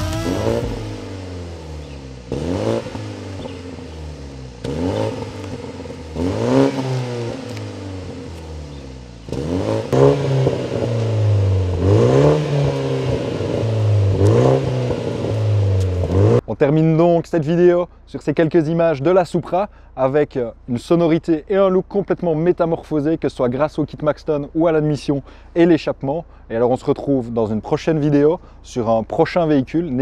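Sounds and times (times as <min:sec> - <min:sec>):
car engine revving: 0:00.0 - 0:16.4.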